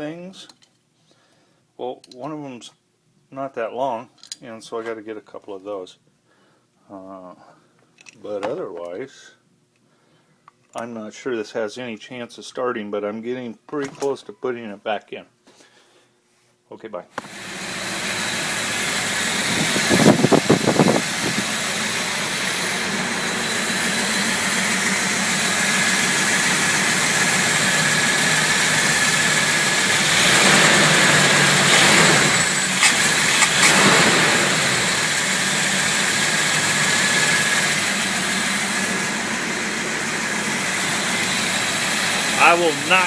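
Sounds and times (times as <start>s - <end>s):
car engine running and revving: 17.2s - 43.0s.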